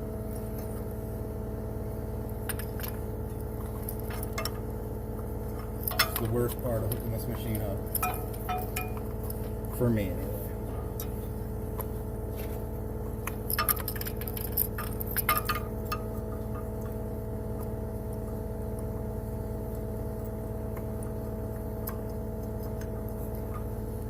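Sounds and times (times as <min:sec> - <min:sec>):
low machine hum: 0:00.0 - 0:24.0
small metallic clicks and clinks: 0:05.8 - 0:09.4.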